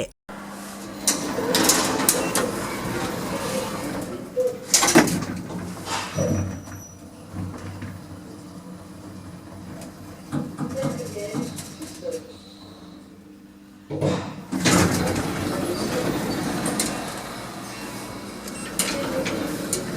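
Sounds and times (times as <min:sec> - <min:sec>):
lift car humming: 0:01.0 - 0:05.9, 0:14.8 - 0:19.9.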